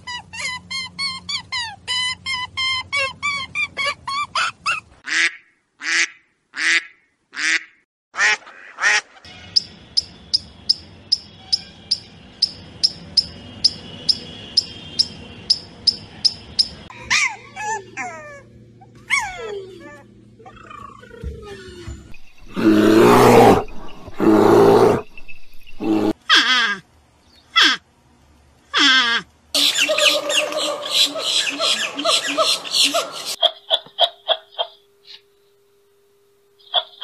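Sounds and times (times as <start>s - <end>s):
ducks and geese calling: 28.8s - 34.8s.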